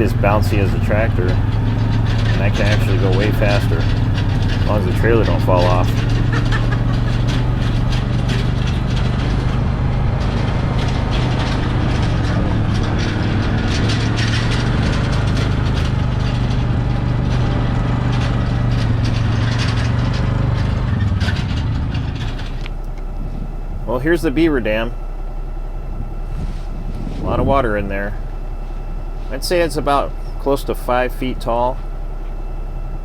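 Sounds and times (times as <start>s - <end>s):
rattles and knocks: 0.0s - 33.0s
vehicle engine hum: 0.0s - 33.0s.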